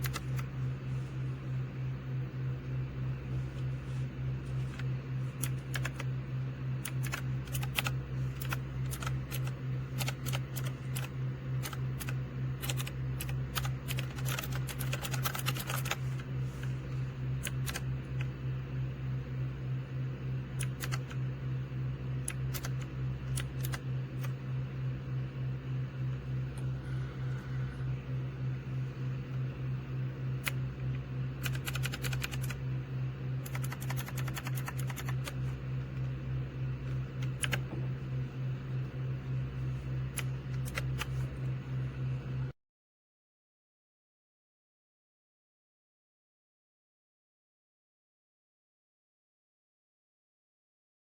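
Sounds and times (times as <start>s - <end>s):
mechanical keyboard typing: 0.0s - 0.5s, 4.8s - 6.1s, 6.8s - 16.0s, 17.4s - 18.3s, 20.6s - 21.2s, 22.2s - 24.4s, 31.4s - 32.6s, 33.4s - 35.5s, 37.2s - 37.7s, 40.1s - 41.2s
steady low hum: 0.0s - 42.6s.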